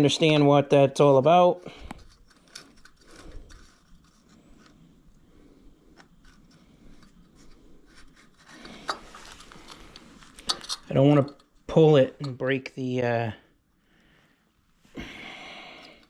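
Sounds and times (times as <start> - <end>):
tool scraping and rubbing: 1.6 - 4.9, 5.9 - 12.0.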